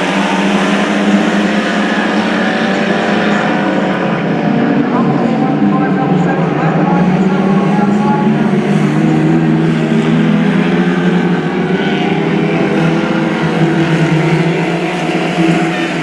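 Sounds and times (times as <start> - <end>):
race car engines drone: 0.0 - 16.0.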